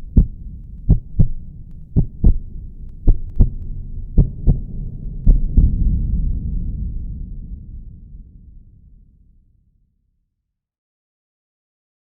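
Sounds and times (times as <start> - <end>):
heartbeat double thumps: 0.0 - 7.5.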